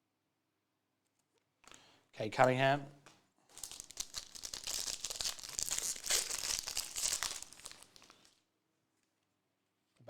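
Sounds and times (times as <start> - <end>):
plastic wrapper crinkling: 3.5 - 8.4.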